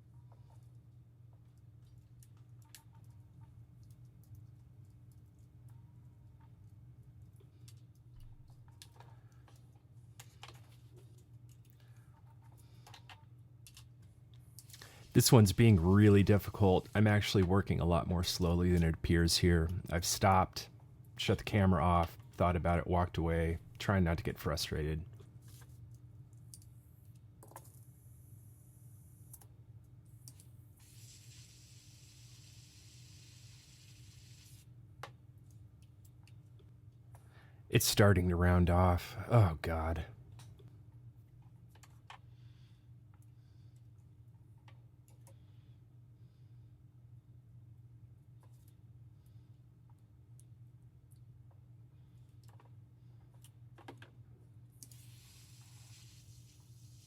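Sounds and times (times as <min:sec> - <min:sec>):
low steady hum: 0:00.0 - 0:34.6.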